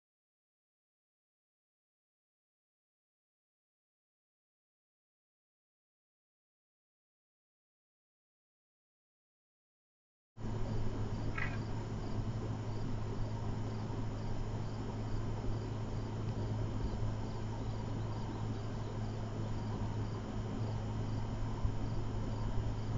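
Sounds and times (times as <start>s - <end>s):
insects chirping: 10.4s - 22.9s
steady low hum: 10.4s - 22.9s.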